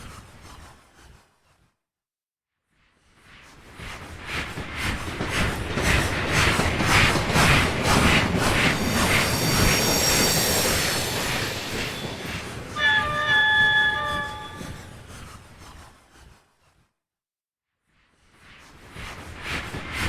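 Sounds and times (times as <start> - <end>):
steam locomotive chuffing: 4.6 - 15.2
high thin squeals: 8.4 - 15.2
multi-tone steam whistle: 8.7 - 15.3.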